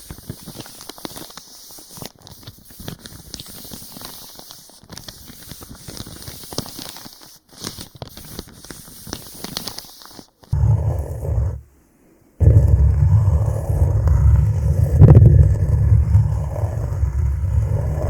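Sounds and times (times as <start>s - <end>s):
hands rubbing microphone: 10.5s - 11.7s, 12.4s - 18.0s.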